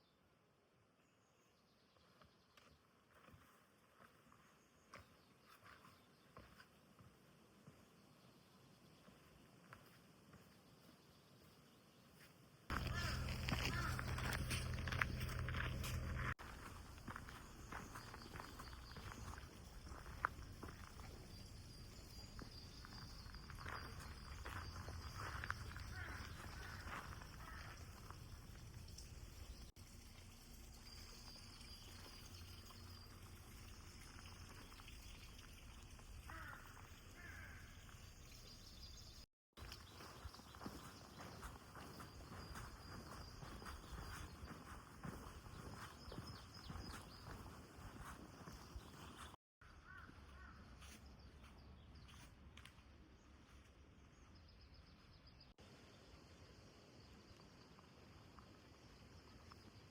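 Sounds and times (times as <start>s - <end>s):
low rumble: 12.7s - 16.4s.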